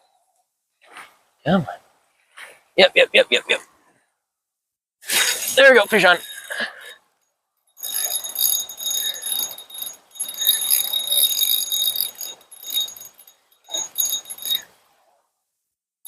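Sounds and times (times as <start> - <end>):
fishing reel rattling: 5.1 - 7.0, 7.8 - 14.7.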